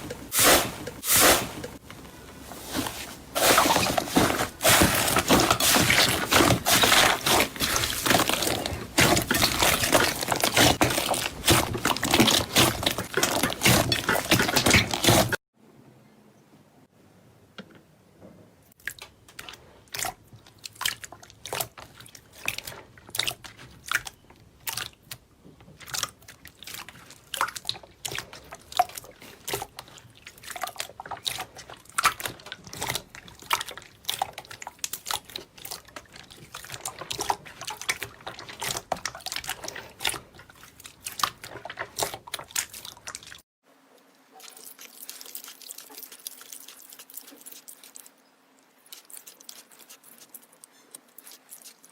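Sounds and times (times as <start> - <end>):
soft rustle: 0.0 - 8.9.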